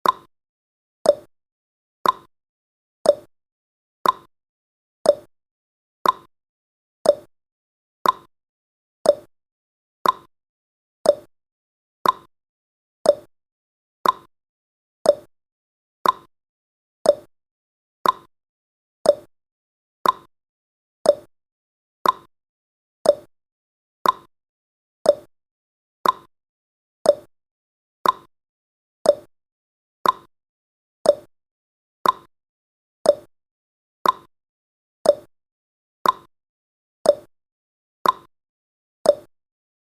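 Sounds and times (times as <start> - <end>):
clock-like timer ticks: 0.0 - 0.3, 1.0 - 1.3, 2.0 - 2.3, 3.0 - 3.3, 4.0 - 4.3, 5.0 - 5.3, 6.0 - 6.3, 7.0 - 7.3, 8.0 - 8.3, 9.0 - 9.3, 10.0 - 10.3, 11.0 - 11.3, 12.0 - 12.3, 13.0 - 13.3, 14.0 - 14.3, 15.0 - 15.3, 16.0 - 16.3, 17.0 - 17.3, 18.0 - 18.3, 19.0 - 19.3, 20.0 - 20.3, 21.0 - 21.3, 22.0 - 22.3, 23.0 - 23.3, 24.0 - 24.3, 25.0 - 25.3, 26.0 - 26.3, 27.0 - 27.3, 28.0 - 28.3, 29.0 - 29.3, 30.0 - 30.3, 31.0 - 31.3, 32.0 - 32.3, 33.0 - 33.3, 34.0 - 34.3, 35.0 - 35.3, 36.0 - 36.3, 37.0 - 37.3, 38.0 - 38.3, 39.0 - 39.3.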